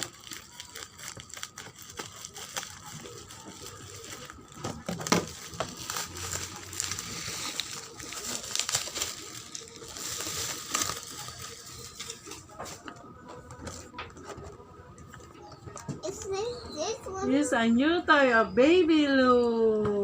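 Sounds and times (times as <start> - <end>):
packaging crinkling and rustling: 0.0 - 12.9.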